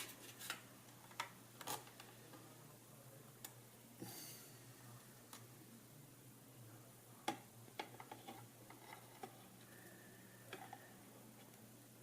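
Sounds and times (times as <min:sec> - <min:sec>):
plastic clock radio parts clicking: 0:00.5 - 0:02.1, 0:07.2 - 0:09.4.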